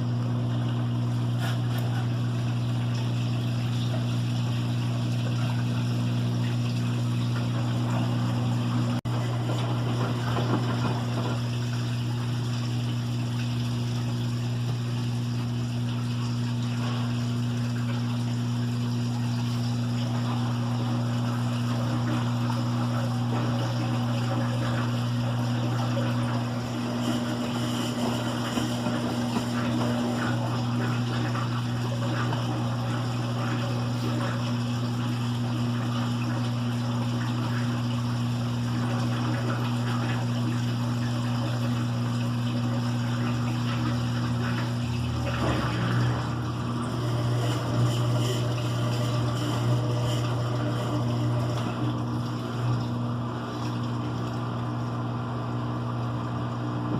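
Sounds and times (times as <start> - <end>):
moving water: 0.0 - 56.9
washing machine motor humming: 0.0 - 56.9
washing machine bumps: 6.8 - 12.4, 20.0 - 34.5, 43.2 - 54.3.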